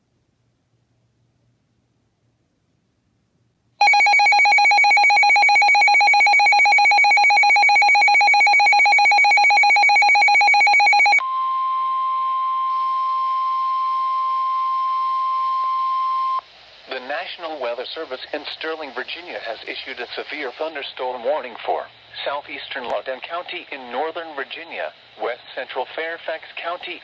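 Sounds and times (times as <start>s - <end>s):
steady alarm beep: 3.8s - 11.2s.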